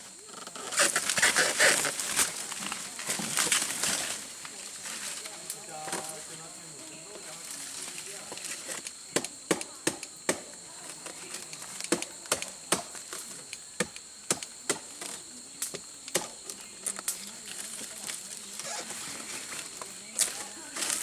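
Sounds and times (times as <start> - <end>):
dry straw crunching and snapping: 0.6 - 6.2.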